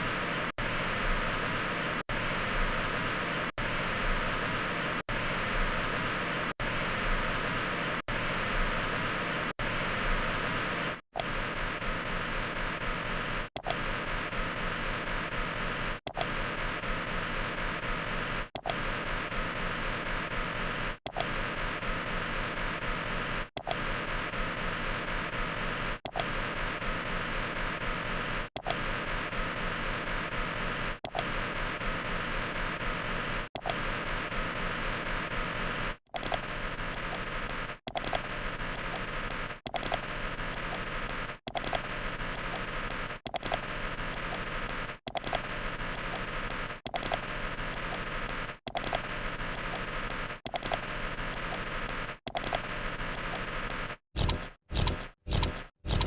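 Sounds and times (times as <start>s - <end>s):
loop restart click: 39.7s - 40.8s, 41.5s - 46.3s, 46.9s - 53.4s, 54.2s - 56.0s.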